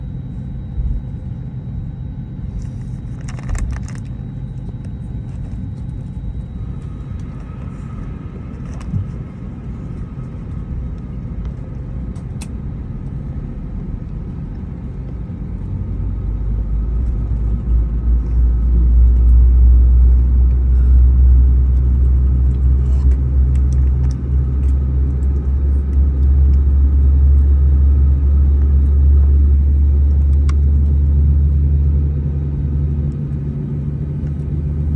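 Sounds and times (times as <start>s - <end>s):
jet engines rumbling: 2.4s - 16.0s.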